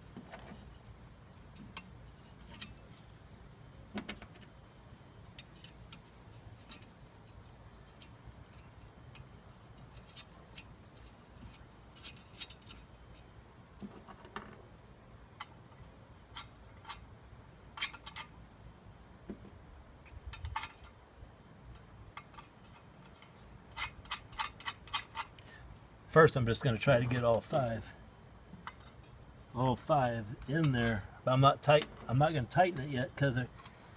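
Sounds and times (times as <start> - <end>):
metal parts clicking: 5.3 - 13.3, 17.7 - 18.4, 21.7 - 25.4.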